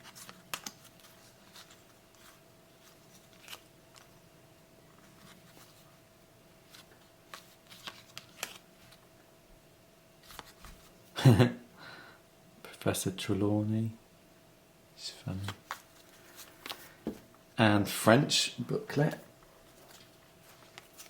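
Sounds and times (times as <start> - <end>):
paper cards clicking and rustling: 0.0 - 4.2, 6.7 - 9.0, 10.2 - 10.9, 15.3 - 17.0, 19.7 - 21.0
faint steady hum: 0.0 - 21.0.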